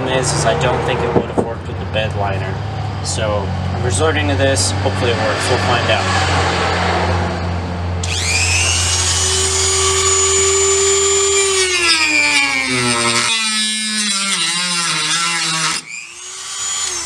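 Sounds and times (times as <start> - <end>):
rotary tool whining: 8.0 - 17.0.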